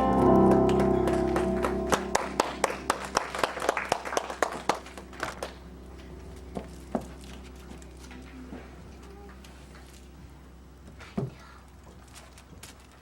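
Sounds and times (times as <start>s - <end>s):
people applauding: 0.0s - 5.6s
music final chord: 0.0s - 6.9s.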